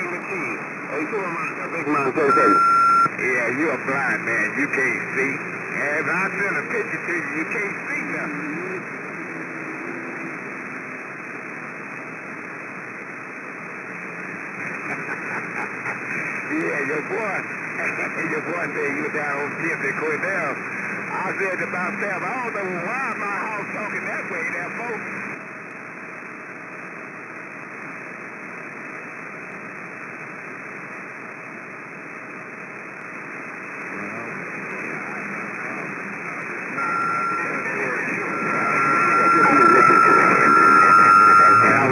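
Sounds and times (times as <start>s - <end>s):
person speaking on radio: 0.0s - 8.8s, 16.5s - 25.1s, 36.8s - 41.9s
radio static hiss: 0.0s - 41.9s.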